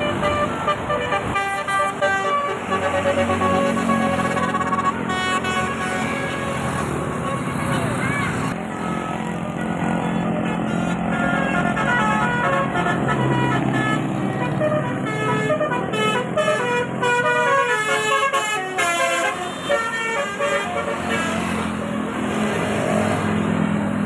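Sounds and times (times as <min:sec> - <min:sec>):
engine humming: 0:00.0 - 0:18.7
multi-tone bus horn tune: 0:00.0 - 0:22.1.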